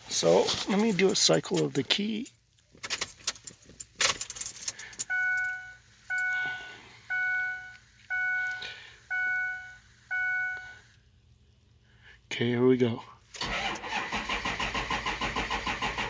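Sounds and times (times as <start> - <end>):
electronic warning beeps: 5.1 - 10.8.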